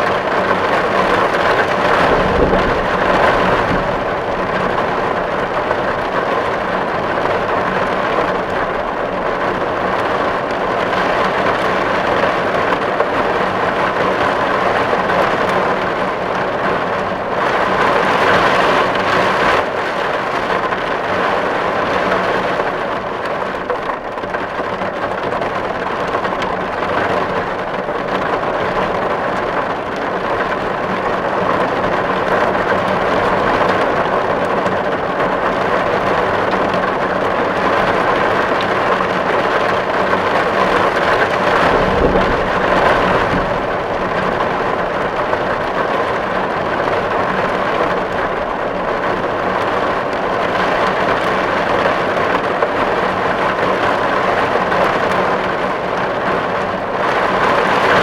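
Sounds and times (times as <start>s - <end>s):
heavy rain on a tin roof: 0.0s - 58.0s
low rumble: 1.1s - 6.6s, 41.2s - 46.4s.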